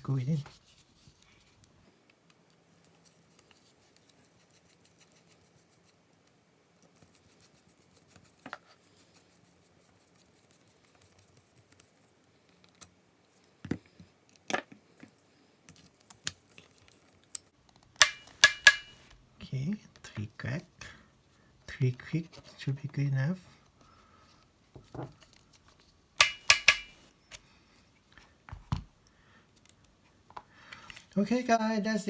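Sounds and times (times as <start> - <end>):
screwdriver sharp clicks: 18.0 - 19.0, 26.2 - 27.0.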